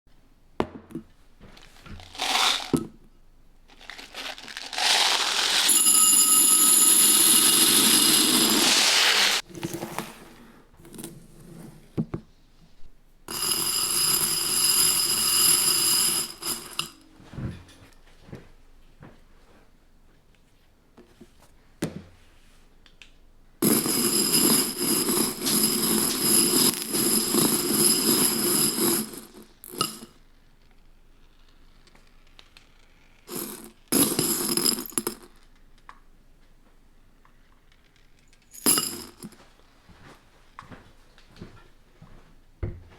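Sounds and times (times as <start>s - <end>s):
pellets rattling into a bowl: 1.6s - 2.8s, 3.7s - 9.4s, 23.7s - 30.0s
plastic pellets pouring into bowl: 2.0s - 2.7s, 3.7s - 6.3s, 7.3s - 9.4s.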